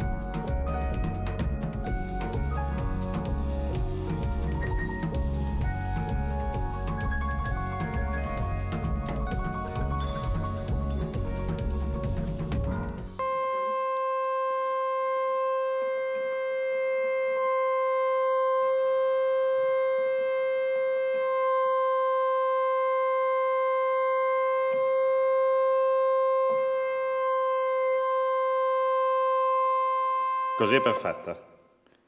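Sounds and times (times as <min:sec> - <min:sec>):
organ holding long note: 0:13.1 - 0:31.2.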